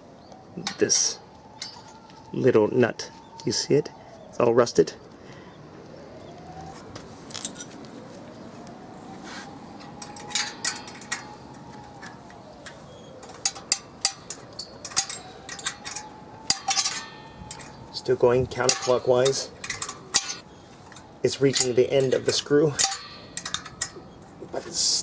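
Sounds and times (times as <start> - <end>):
wrench clicking on metal nut: 22.8 - 24.0.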